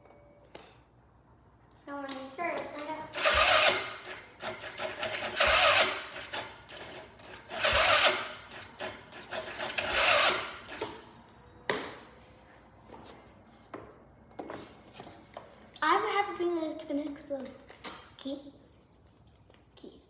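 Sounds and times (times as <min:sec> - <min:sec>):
atv engine cranking: 0:02.5 - 0:11.2.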